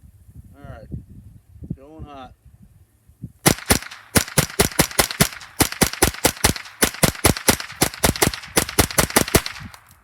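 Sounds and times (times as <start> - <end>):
rifle firing rapid shots: 3.4 - 9.9.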